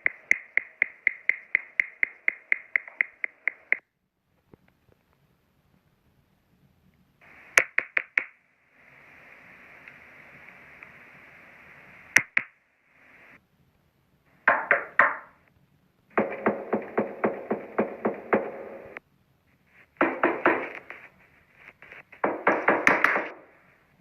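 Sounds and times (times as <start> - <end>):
steady hiss: 4.6 - 14.5, 15.2 - 24.0
knocking on door: 14.5 - 15.3, 16.2 - 19.0, 20.0 - 20.7, 22.2 - 23.4.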